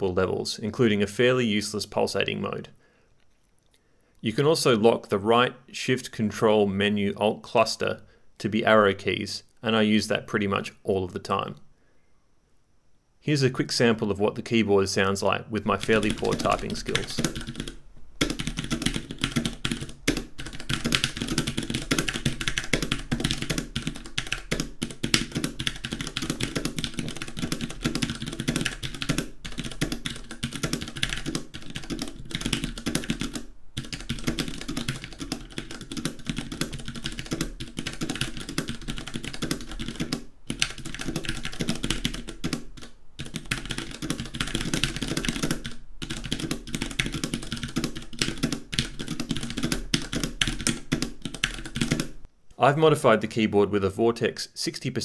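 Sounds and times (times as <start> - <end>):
mechanical keyboard typing: 15.7 - 52.3.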